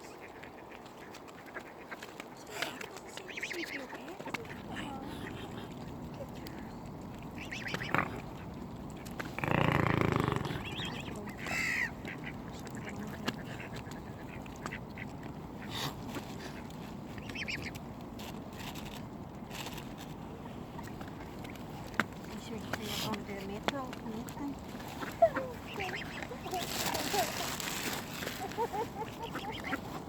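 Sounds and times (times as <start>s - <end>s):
ducks quacking: 7.4s - 15.8s, 24.8s - 30.0s.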